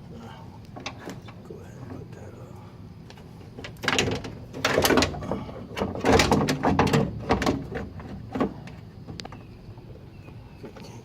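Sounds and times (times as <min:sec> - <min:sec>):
metal door latch clunking: 0:03.6 - 0:09.4.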